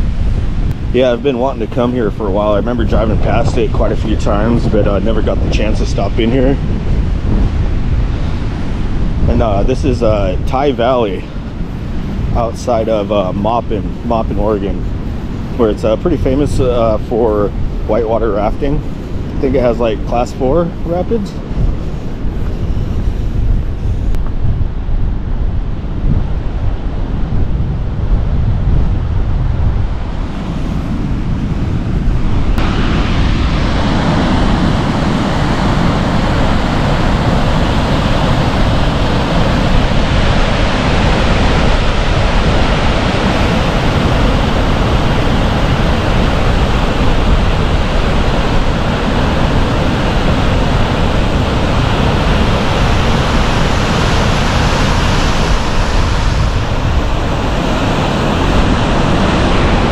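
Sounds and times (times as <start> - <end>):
wind buffeting microphone: 0.0 - 59.9
waterfall roaring: 32.5 - 59.9.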